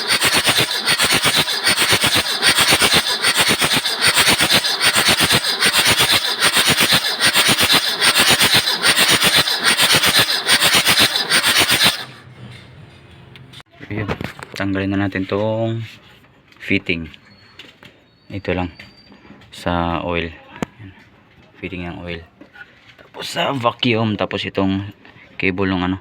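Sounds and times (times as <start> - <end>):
starter motor cranking engine: 0.0 - 12.3.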